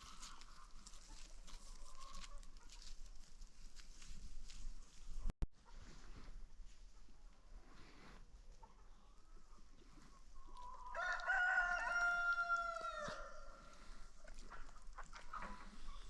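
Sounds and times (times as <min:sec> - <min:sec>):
hens clucking: 0:00.0 - 0:03.3, 0:06.7 - 0:16.0
hens scratching: 0:00.0 - 0:16.0
rooster crowing: 0:10.9 - 0:13.6.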